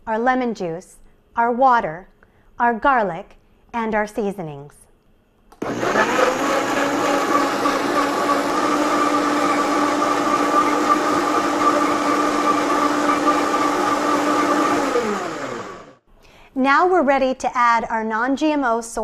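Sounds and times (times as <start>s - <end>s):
blender running: 5.6s - 16.0s.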